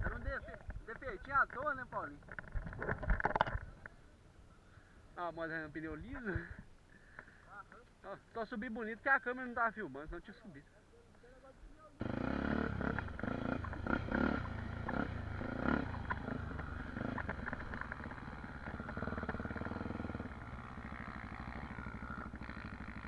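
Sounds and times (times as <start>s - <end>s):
dirt bike engine revving: 12.0s - 23.0s.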